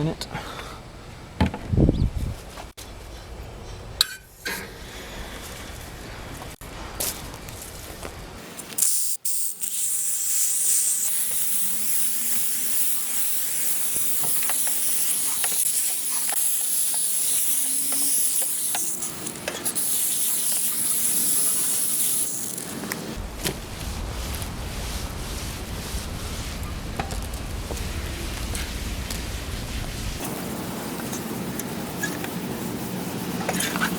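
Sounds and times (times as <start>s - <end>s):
spray gun hissing: 8.8s - 33.9s
low rumbling noise: 22.7s - 31.6s.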